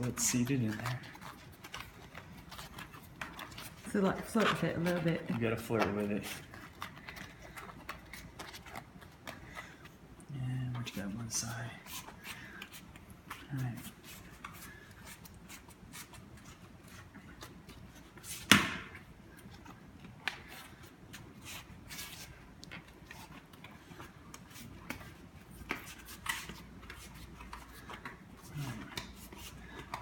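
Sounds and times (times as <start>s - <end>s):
rubbing of inner tube: 0.0s - 10.0s.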